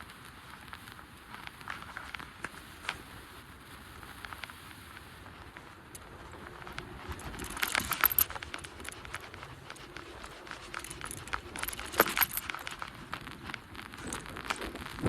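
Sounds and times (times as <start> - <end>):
faint background noise: 0.0 - 15.0
metallic clinking and jangling: 6.0 - 13.3.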